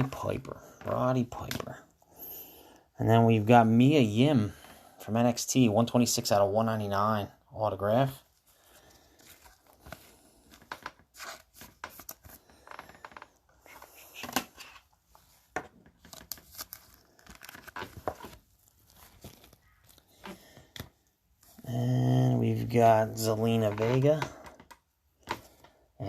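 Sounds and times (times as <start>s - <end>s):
cards rustling: 8.3s - 21.6s
card wrapper crinkling and tearing: 16.0s - 20.8s.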